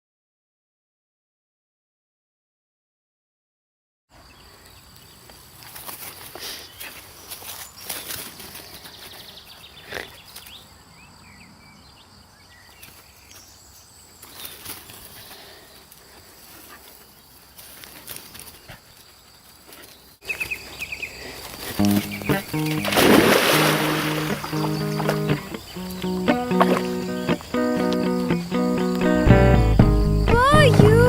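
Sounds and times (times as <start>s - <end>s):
music with held notes: 23.9s - 31.0s.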